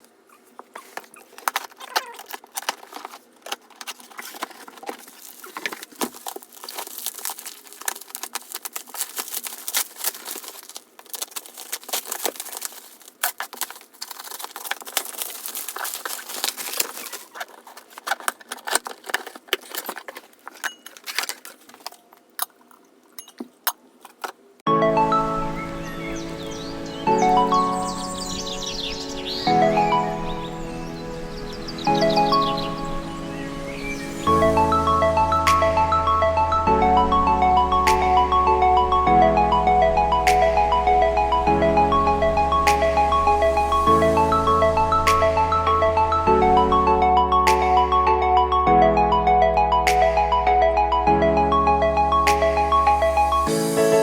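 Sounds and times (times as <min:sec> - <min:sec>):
packaging crinkling and rustling: 0:00.0 - 0:24.6.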